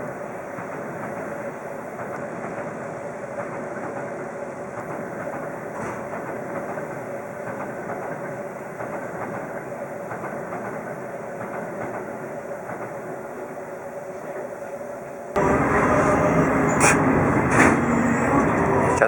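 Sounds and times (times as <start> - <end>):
train wheels rumbling: 0.0 - 19.0
steady hum: 15.4 - 19.0.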